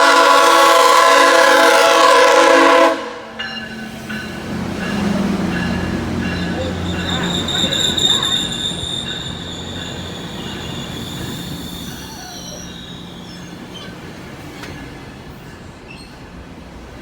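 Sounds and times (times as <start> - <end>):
train rumbling: 0.0 - 17.0
train wheels squealing: 3.4 - 16.5.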